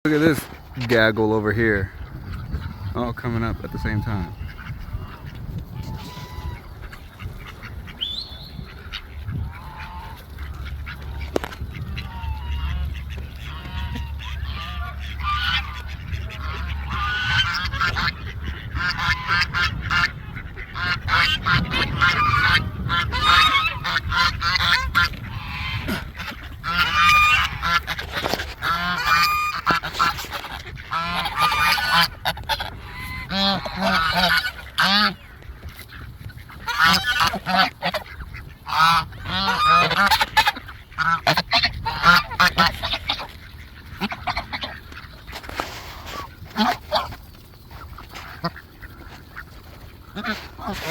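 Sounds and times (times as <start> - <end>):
geese honking: 0.1 - 50.9.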